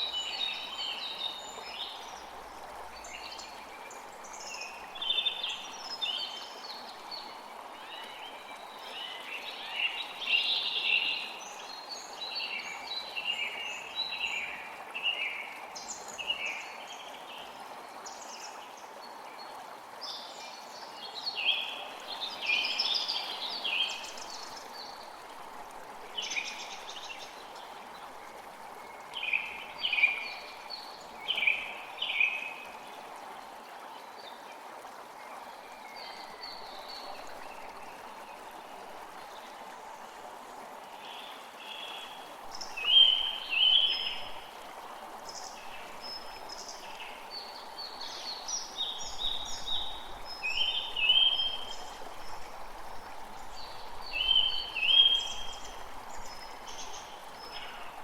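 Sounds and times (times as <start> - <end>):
creek water running: 0.0 - 58.0.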